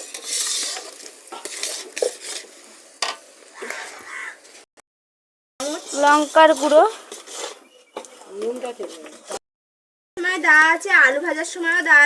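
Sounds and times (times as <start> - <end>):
utensil stirring and scraping pan: 0.0 - 3.2, 5.6 - 9.4
hot oil sizzling: 0.0 - 3.6.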